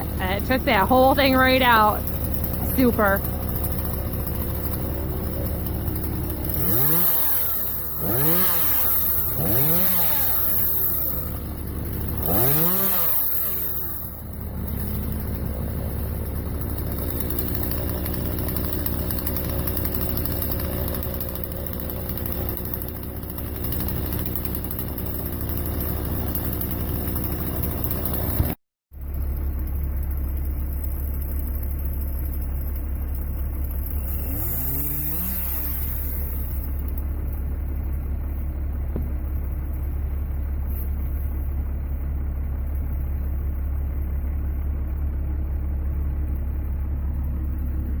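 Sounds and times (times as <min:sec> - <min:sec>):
chainsaw revving: 0:00.0 - 0:28.6, 0:33.1 - 0:37.4.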